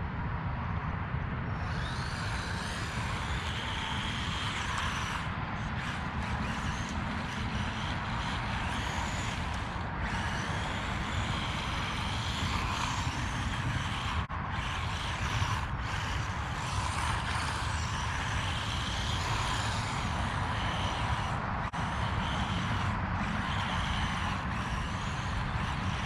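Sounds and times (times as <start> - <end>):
toy truck electric motor whining: 1.5 - 26.0.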